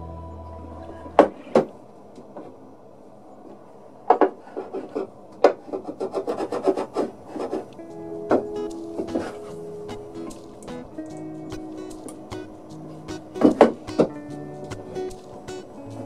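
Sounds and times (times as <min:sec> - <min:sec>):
rubbing strokes on wood: 0:04.4 - 0:07.7.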